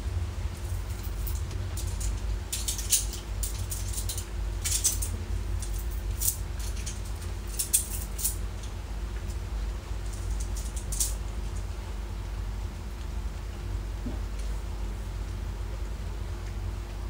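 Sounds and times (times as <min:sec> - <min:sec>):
low rumble with hum: 0:00.0 - 0:17.0
faint rustles and clicks: 0:00.5 - 0:11.8.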